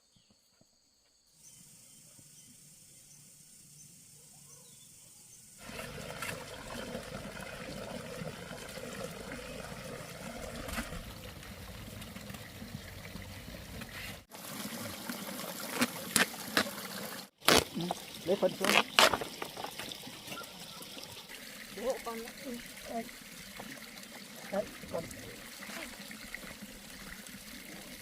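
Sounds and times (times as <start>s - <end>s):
faint insect chirping: 0.0s - 5.6s
water rushing: 5.6s - 28.0s.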